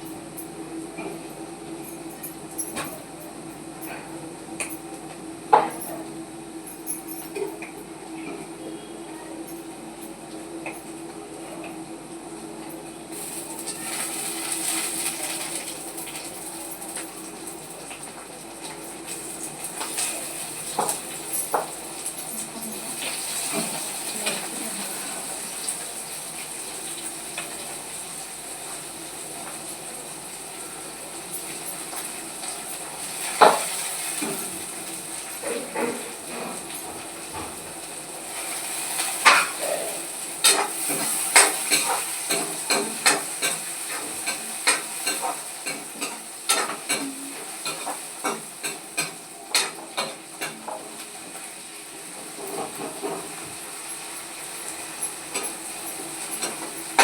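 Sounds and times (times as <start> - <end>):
vegetables sizzling in a pan: 13.1 - 57.0.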